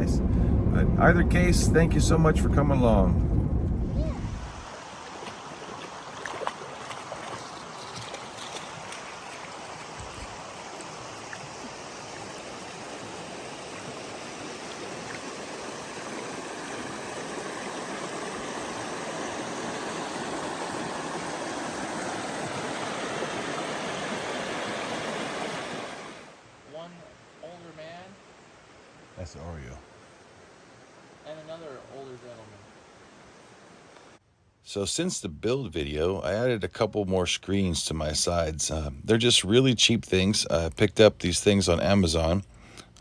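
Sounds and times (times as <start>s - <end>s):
river water rushing: 4.2s - 29.2s, 29.9s - 34.2s.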